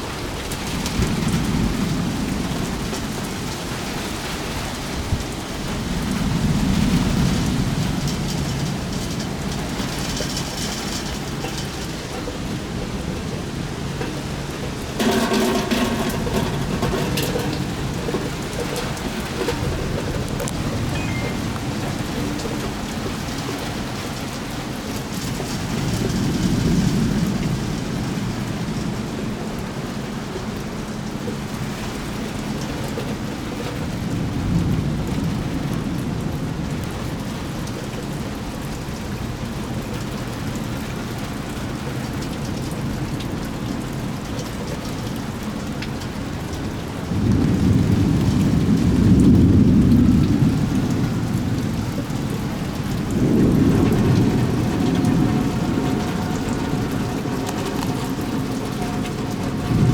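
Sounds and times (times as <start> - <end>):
rain falling: 0.0 - 59.9
thunder rumbling: 0.2 - 29.4, 46.2 - 59.9.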